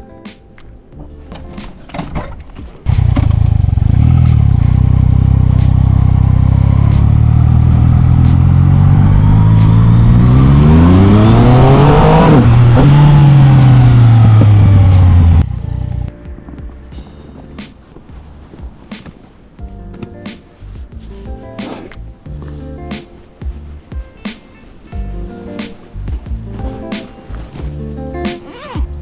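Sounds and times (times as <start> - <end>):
motorcycle engine revving: 2.9 - 16.1.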